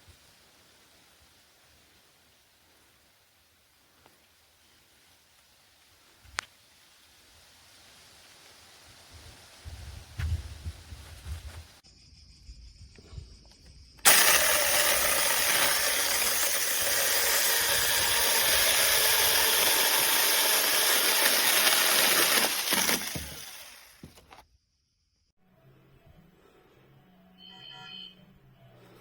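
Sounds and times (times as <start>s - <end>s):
electric mini chainsaw running: 14.0s - 24.4s.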